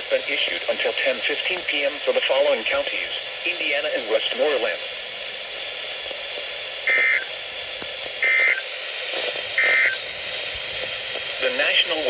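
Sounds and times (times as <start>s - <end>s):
radio hiss: 0.0s - 12.0s
digital two-tone squawks: 6.9s - 7.3s, 9.6s - 10.0s.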